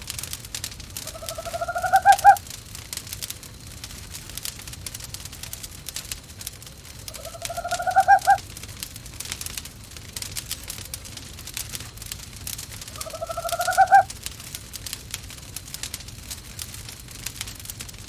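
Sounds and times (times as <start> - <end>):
wood fire crackling: 0.0 - 18.0
owl calling pulsed trill: 1.0 - 2.4, 7.1 - 8.4, 12.9 - 14.1.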